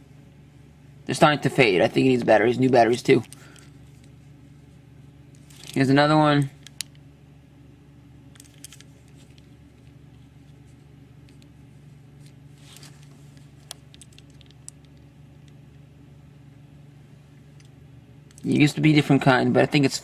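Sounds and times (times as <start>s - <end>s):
low electrical hum: 0.0s - 20.0s
soft rustle: 11.8s - 13.7s.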